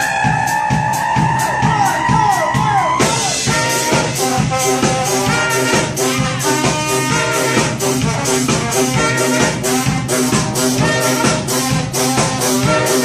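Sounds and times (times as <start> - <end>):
brass band playing: 0.0 - 13.0
drum beat: 0.0 - 13.0
high horn note dropping in pitch: 3.0 - 13.0.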